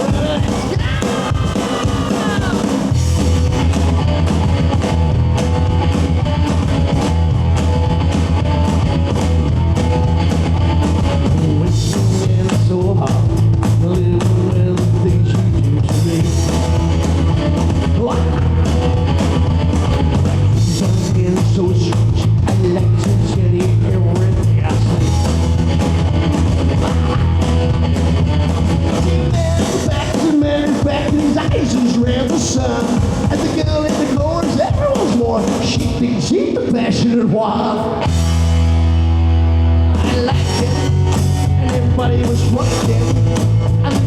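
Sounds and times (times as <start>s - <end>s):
electric guitar: 0.0s - 36.7s, 37.6s - 44.0s
drums: 0.0s - 44.0s
heavy bass line: 0.0s - 44.0s.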